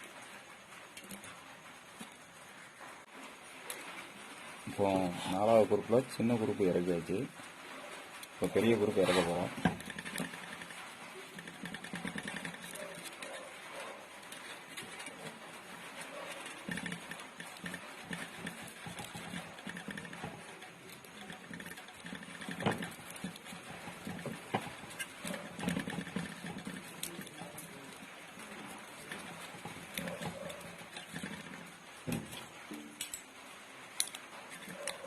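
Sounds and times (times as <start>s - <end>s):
wire rustling and clicking: 8.1s - 35.0s.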